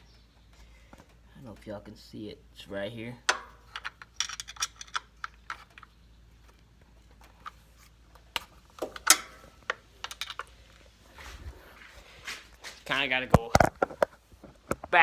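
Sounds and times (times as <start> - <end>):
hand tools clicking and knocking: 3.2 - 10.6.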